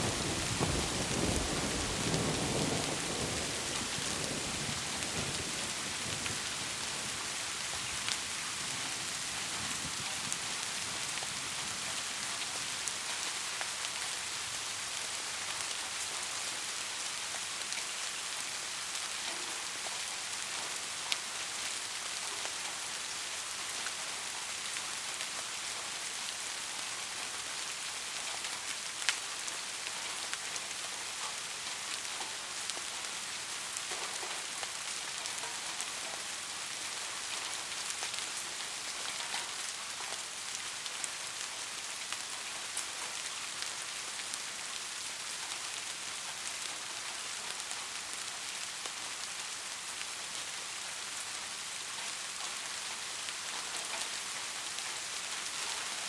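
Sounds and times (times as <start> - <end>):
thunder rumble: 0.0 - 6.2
heavy rain falling: 0.0 - 56.0.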